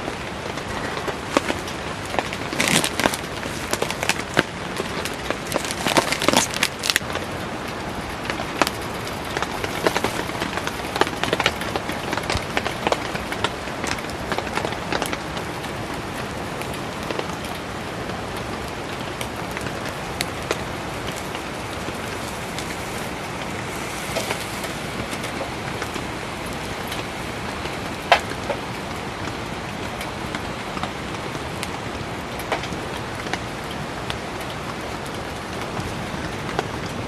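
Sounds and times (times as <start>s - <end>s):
campfire crackling and popping: 0.0s - 37.0s
heavy rain falling: 0.0s - 37.0s.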